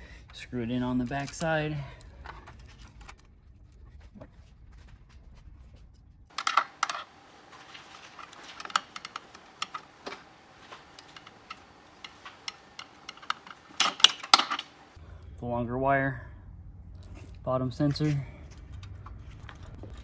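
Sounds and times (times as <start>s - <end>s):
small parts clicking and tapping: 6.3s - 15.0s.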